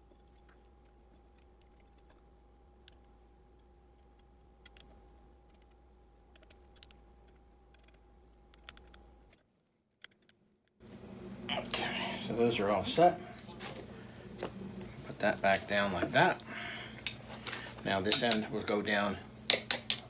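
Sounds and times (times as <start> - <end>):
small metal clicks and ticks: 0.0 - 9.4, 19.5 - 20.0
low steady hum: 10.8 - 20.0.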